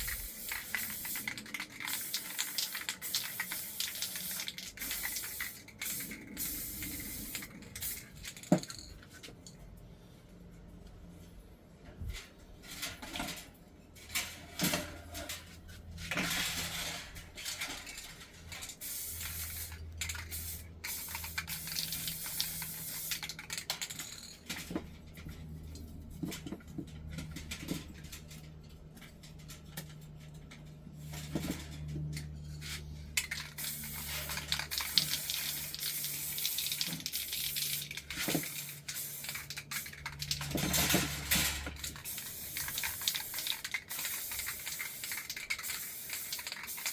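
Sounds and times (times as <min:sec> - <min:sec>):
metal parts clinking: 0:00.0 - 0:09.2, 0:16.1 - 0:24.8, 0:32.6 - 0:46.9.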